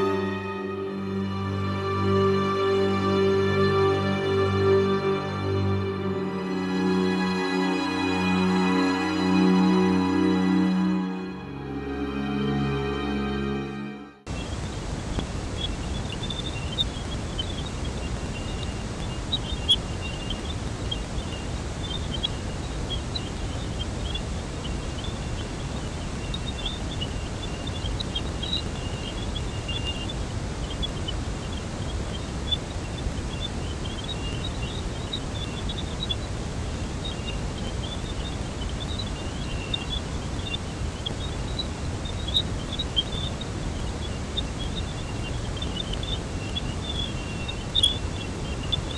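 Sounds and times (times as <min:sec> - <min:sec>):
high chirps and warbles: 0:00.0 - 0:48.9
steady hiss and rumble: 0:14.3 - 0:48.9.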